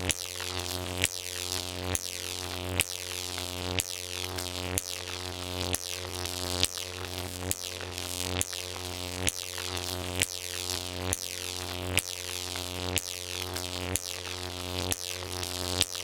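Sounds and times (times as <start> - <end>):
electric arc buzzing: 0.0 - 16.0.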